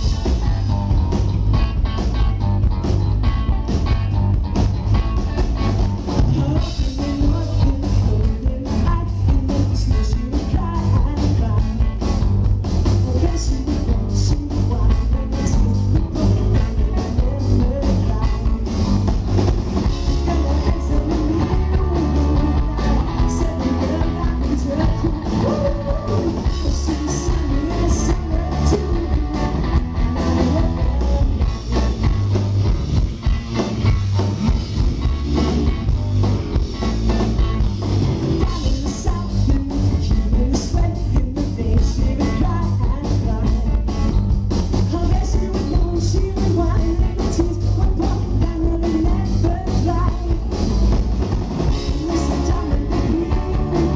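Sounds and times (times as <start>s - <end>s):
live rock band playing: 0.0s - 53.9s
person singing: 6.2s - 12.2s, 13.0s - 19.0s, 19.9s - 32.4s, 38.4s - 44.0s, 44.9s - 51.0s, 51.7s - 53.9s.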